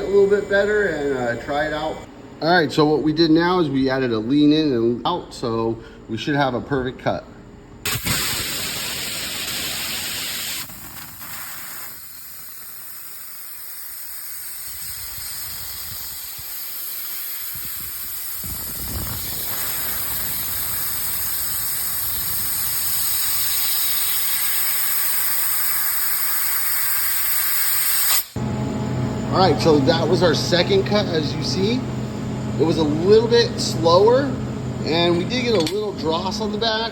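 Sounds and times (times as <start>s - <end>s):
hiss of laser cutting gas: 7.9s - 28.4s.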